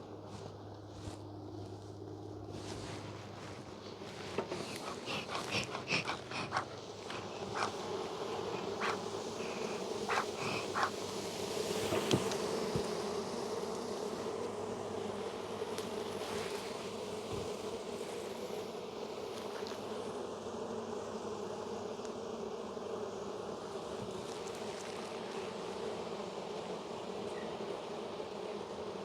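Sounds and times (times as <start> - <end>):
bees buzzing: 3.4 - 15.6.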